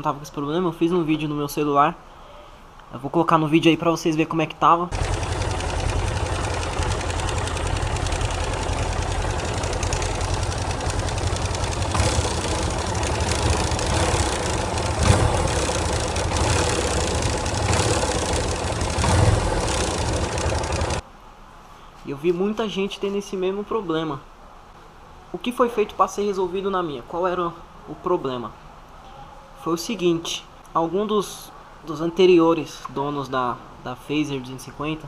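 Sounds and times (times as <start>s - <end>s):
motorcycle engine running: 4.9s - 21.0s
rapid ticking noise: 4.9s - 21.0s.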